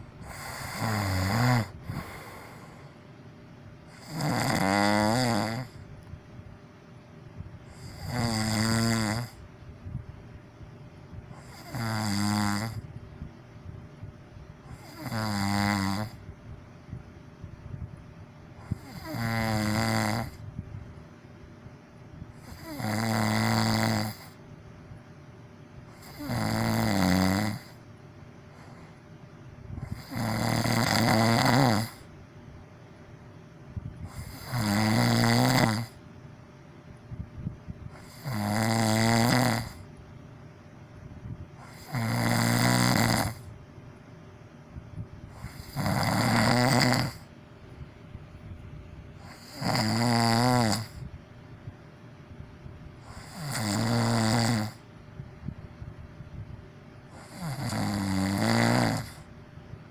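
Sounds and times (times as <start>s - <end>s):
person snoring loudly: 0.2s - 2.8s, 3.9s - 5.8s, 7.7s - 9.4s, 11.4s - 12.8s, 14.7s - 16.2s, 18.6s - 20.4s, 22.4s - 24.4s, 25.9s - 27.8s, 29.8s - 32.1s, 34.1s - 36.0s, 37.9s - 39.8s, 41.6s - 43.5s, 45.3s - 47.3s, 49.2s - 51.1s, 53.0s - 54.8s, 57.1s - 59.3s.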